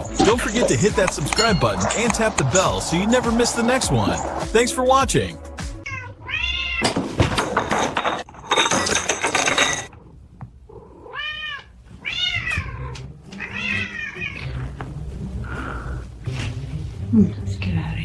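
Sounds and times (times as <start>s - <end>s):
cat meowing: 5.8s - 6.9s, 10.7s - 14.7s.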